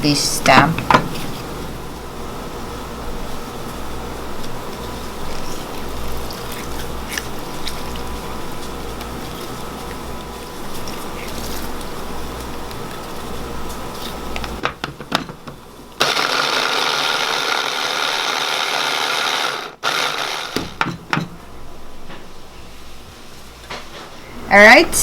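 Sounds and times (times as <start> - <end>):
kitchen appliance motor running: 16.0 - 20.9.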